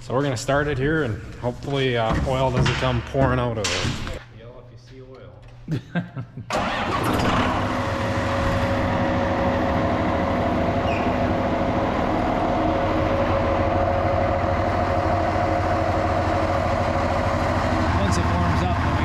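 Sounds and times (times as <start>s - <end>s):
tractor diesel engine idling: 6.5s - 19.0s.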